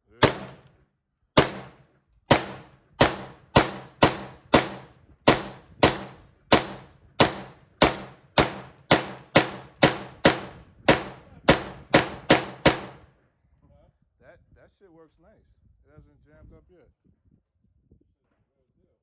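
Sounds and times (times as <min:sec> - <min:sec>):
pistol shots ringing off walls: 0:00.2 - 0:00.7, 0:01.4 - 0:13.1.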